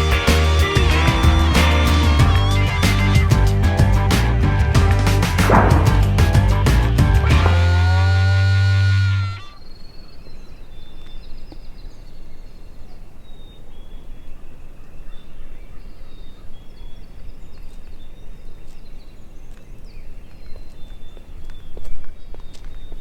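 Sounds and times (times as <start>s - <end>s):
songbirds chirping: 8.8s - 23.0s.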